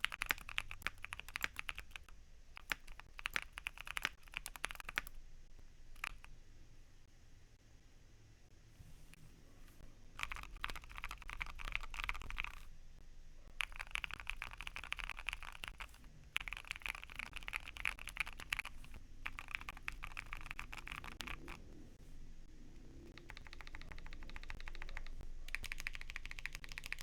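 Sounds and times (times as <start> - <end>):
mechanical keyboard typing: 0.0 - 5.2, 6.0 - 6.3, 10.2 - 12.7, 13.6 - 21.7, 23.0 - 27.0.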